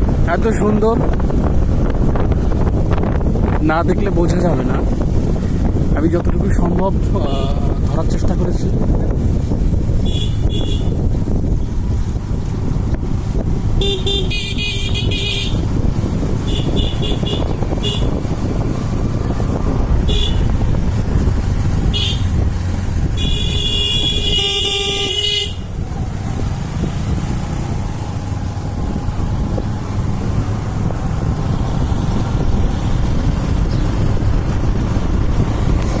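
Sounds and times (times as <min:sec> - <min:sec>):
road rumble: 0:00.0 - 0:36.0
vehicle horn tooting: 0:10.0 - 0:11.0, 0:13.8 - 0:15.6, 0:16.5 - 0:18.2, 0:20.1 - 0:20.5, 0:21.9 - 0:22.3, 0:23.2 - 0:25.7.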